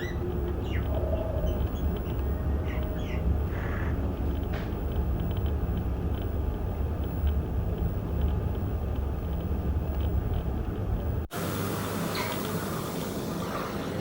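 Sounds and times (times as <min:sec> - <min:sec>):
myna bird calls: 0:00.0 - 0:04.0
city traffic rumble: 0:00.0 - 0:11.4.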